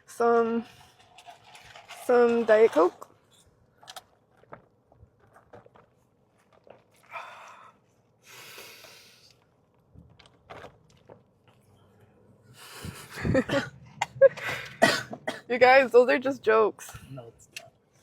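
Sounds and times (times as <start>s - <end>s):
person coughing and spluttering: 13.2s - 15.5s.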